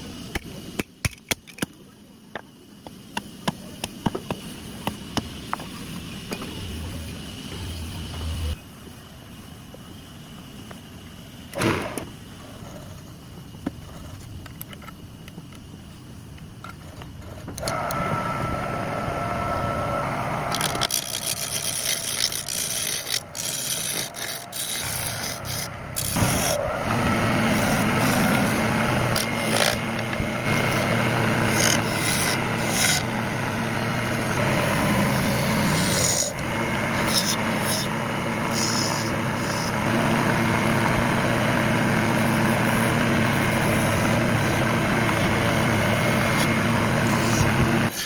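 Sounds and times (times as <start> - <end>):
steady low hum: 1.9 - 48.0
tool rasping wood: 20.5 - 48.0.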